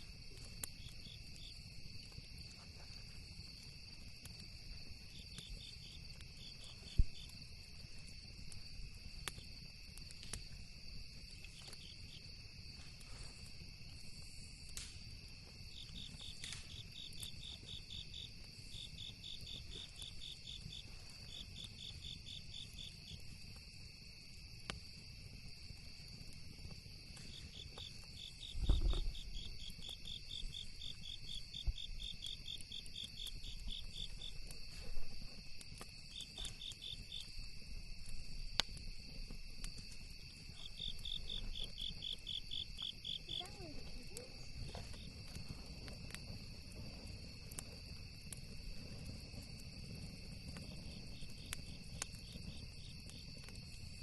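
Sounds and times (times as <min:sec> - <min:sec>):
campfire crackling and popping: 0:00.0 - 0:54.0
crickets chirping: 0:00.0 - 0:54.0
high insect trill: 0:00.0 - 0:54.0
loud low thump: 0:28.6 - 0:29.2.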